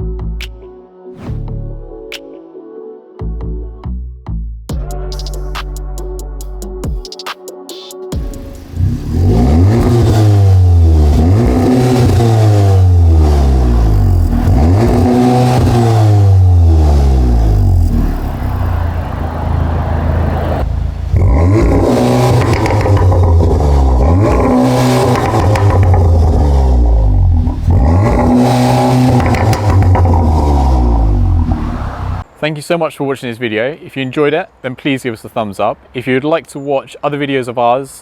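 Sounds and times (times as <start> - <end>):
car engine revving: 8.2 - 32.3.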